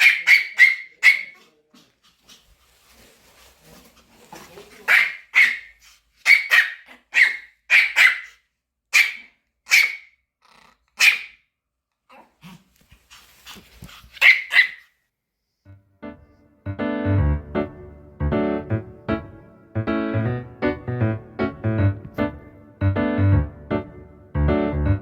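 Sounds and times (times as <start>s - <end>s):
small dog yapping: 0.0s - 2.4s, 4.8s - 10.2s, 11.0s - 11.4s, 14.2s - 14.9s.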